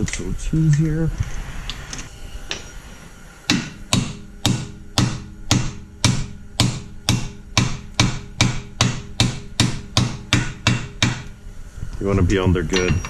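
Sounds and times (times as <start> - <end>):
hammer striking steel punch: 3.5 - 11.3.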